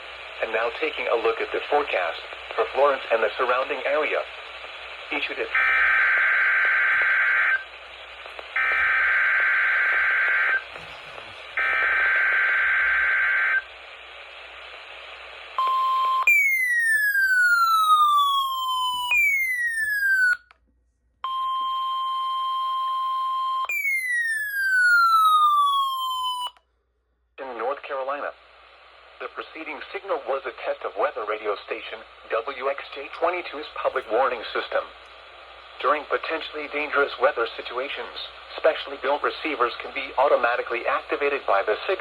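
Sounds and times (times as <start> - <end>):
static hiss: 0.0 - 16.4, 27.4 - 42.0.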